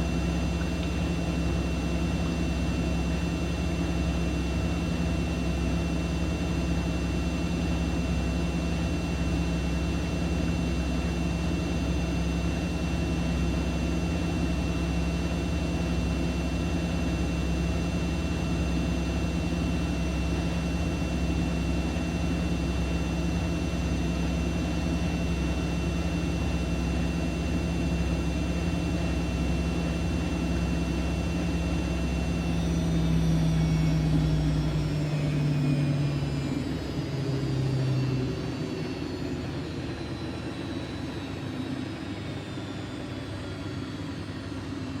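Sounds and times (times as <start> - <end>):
washing machine motor hum: 0.0 - 45.0
high whine: 23.7 - 45.0.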